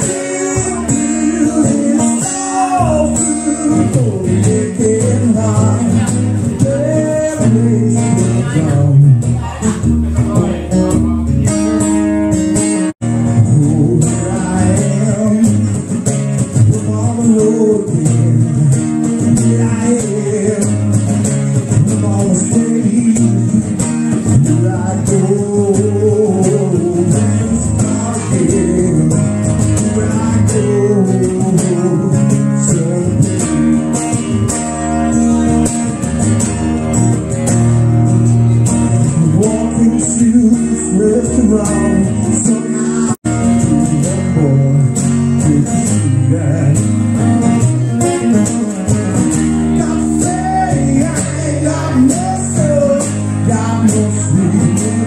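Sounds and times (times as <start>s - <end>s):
blues band playing: 0.0s - 55.0s
guitar: 0.0s - 55.0s.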